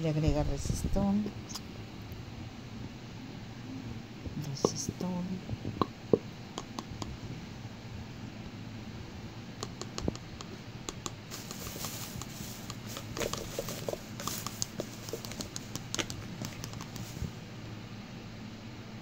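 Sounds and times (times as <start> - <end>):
light clicks and taps: 9.6 - 17.2.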